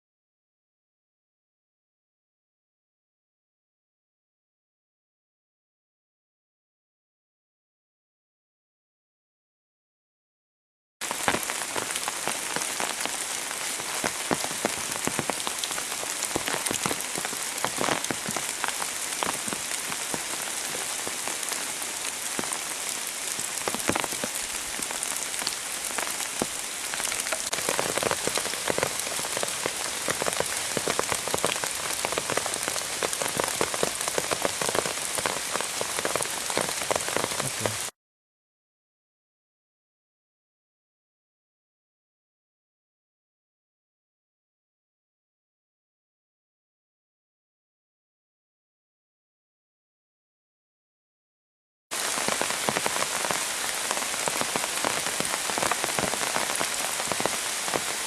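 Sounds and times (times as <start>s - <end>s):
pouring rain: 11.0s - 37.9s, 51.9s - 58.0s
raindrops striking close by: 11.0s - 37.9s, 52.0s - 58.0s.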